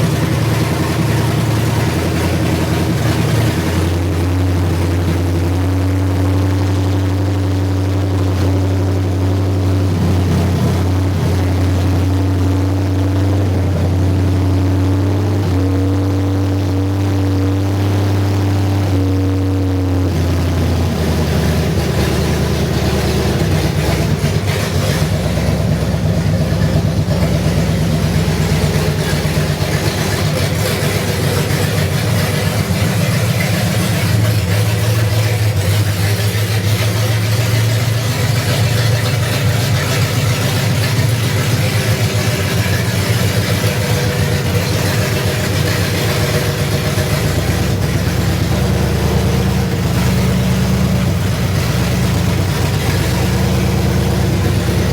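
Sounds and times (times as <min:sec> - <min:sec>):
loud engine without exhaust: 0:00.0 - 0:54.9.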